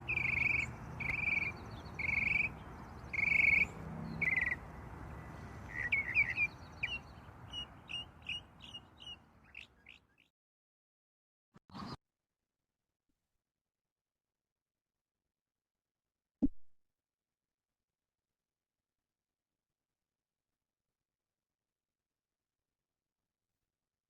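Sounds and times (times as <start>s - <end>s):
birds calling: 0.0s - 10.3s.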